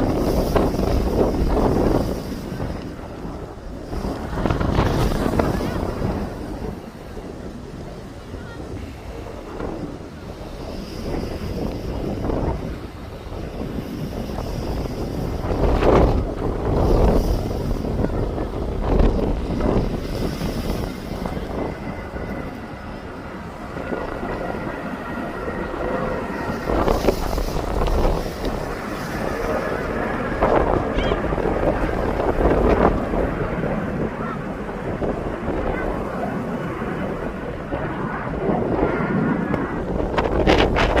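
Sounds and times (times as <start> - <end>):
jet engines rumbling: 0.0 - 41.0
wind buffeting microphone: 0.0 - 41.0.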